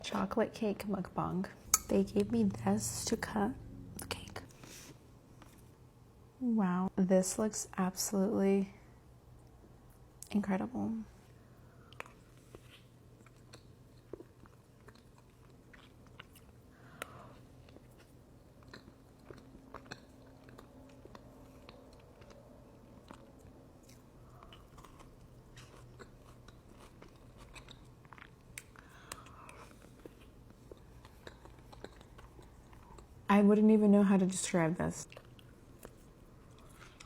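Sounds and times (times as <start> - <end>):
chewing cake: 11.8 - 33.3, 35.0 - 37.0.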